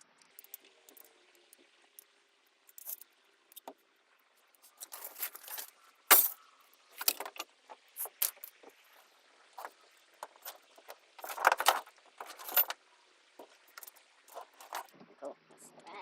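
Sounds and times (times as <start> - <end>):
metal tools clinking and rattling: 4.6 - 7.4, 8.0 - 8.6, 11.2 - 12.8, 13.4 - 14.9.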